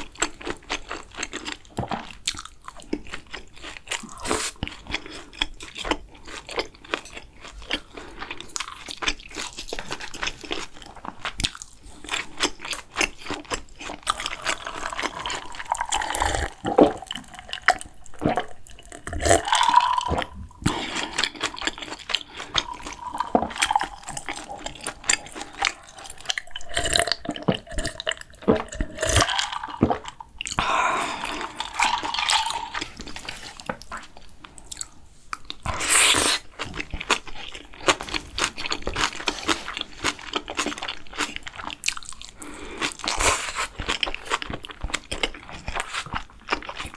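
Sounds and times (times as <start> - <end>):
chewing and crunching food: 0.0 - 46.9
wet slurping: 14.1 - 33.6.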